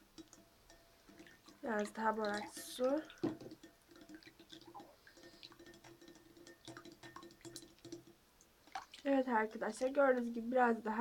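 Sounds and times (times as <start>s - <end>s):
faint water drips: 0.0s - 11.0s
light clicks of stirring: 0.1s - 9.0s.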